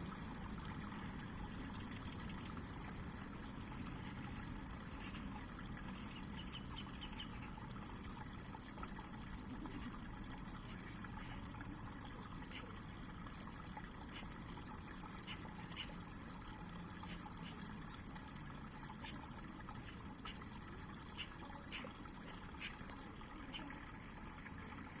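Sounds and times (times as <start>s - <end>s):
river water flowing over stones: 0.0s - 25.0s
small water splashes and plinks: 0.0s - 25.0s.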